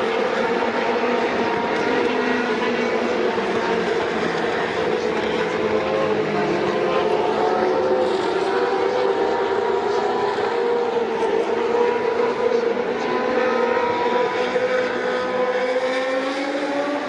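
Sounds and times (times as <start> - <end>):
racing car engine at high revs: 0.0 - 17.0.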